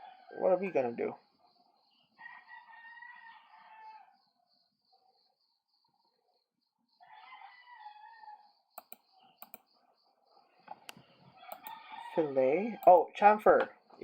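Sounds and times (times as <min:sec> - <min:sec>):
computer mouse clicks: 0:08.8 - 0:09.7, 0:10.7 - 0:11.8, 0:12.8 - 0:13.1.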